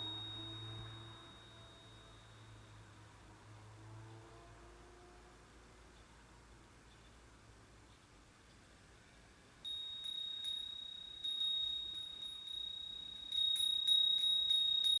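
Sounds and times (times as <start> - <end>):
metal wind chime ringing: 0.0 - 3.1, 9.6 - 15.0.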